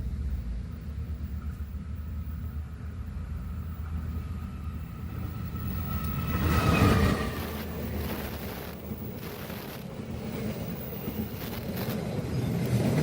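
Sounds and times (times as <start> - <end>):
steady low rumble: 0.0 - 6.3.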